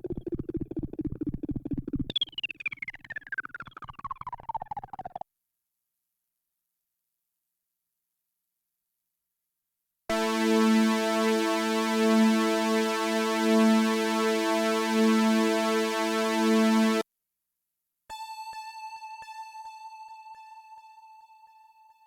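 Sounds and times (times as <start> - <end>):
synthesizer held note: 10.1 - 17.0.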